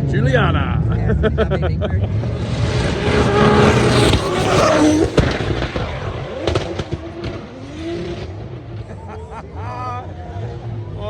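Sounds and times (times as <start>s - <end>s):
car engine at high revs: 1.8s - 8.9s.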